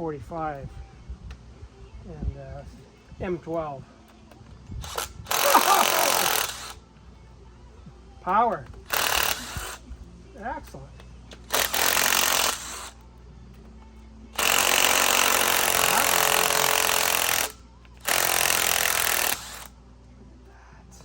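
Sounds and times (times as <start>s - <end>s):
impact wrench hammering: 8.9s - 9.8s, 11.4s - 13.0s, 14.4s - 19.7s.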